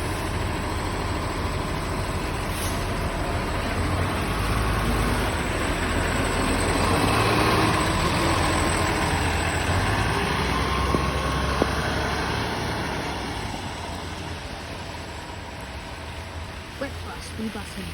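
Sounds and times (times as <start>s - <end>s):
engine whine: 0.0s - 17.1s
bus diesel engine running: 0.0s - 17.9s.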